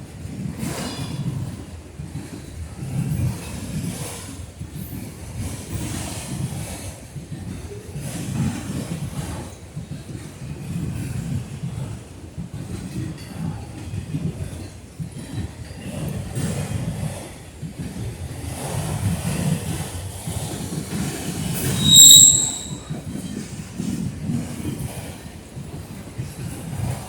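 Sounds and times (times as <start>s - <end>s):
freight train wheels rumbling: 0.0s - 27.0s
wheel squealing against rail: 21.4s - 23.4s.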